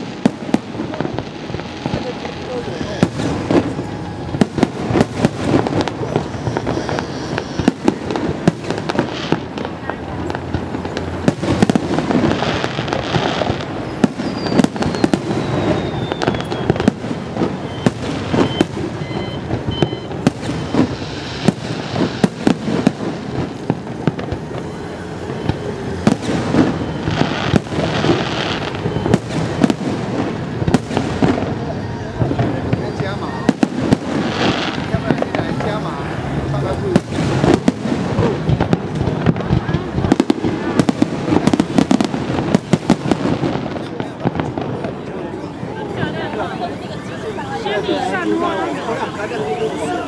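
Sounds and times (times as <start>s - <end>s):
falling firework whistle: 0.0s - 9.7s, 11.3s - 36.0s
fireworks bangs and crackling: 0.0s - 50.0s.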